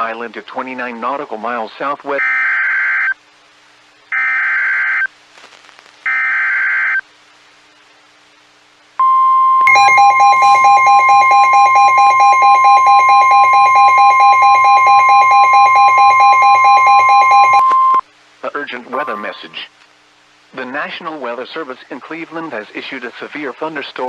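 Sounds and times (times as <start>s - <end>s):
steady high alert tone: 9.0s - 18.0s.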